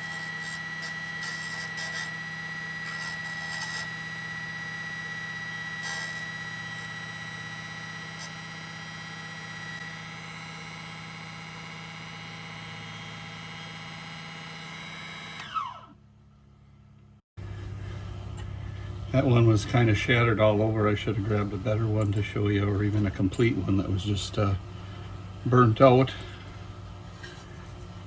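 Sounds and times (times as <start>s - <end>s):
high-speed cutting tool whine: 0.0s - 16.0s.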